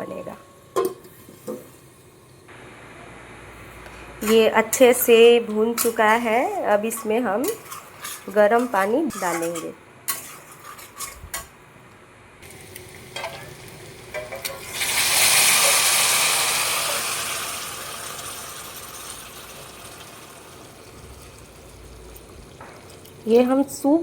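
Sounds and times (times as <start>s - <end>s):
loud sizzle in pan: 4.2s - 11.4s, 12.4s - 23.8s.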